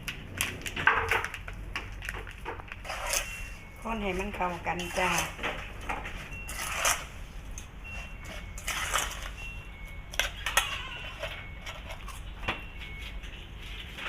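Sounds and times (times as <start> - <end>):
spoon clinking and scraping in bowl: 2.6 - 12.6.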